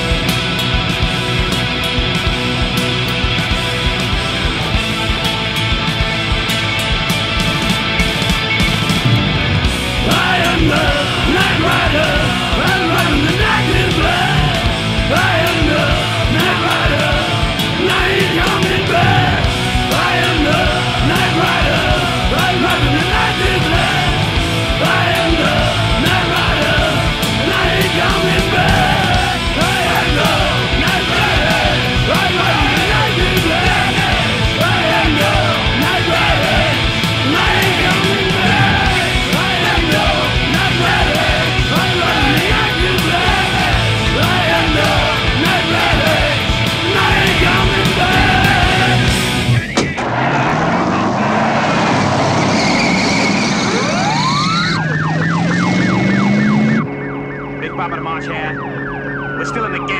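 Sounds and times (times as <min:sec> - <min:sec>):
pounding drums: 0:00.0 - 0:51.8
heavy metal band playing: 0:00.0 - 0:58.8
bass guitar: 0:00.0 - 0:59.9
distorted electric guitars: 0:00.0 - 0:59.9.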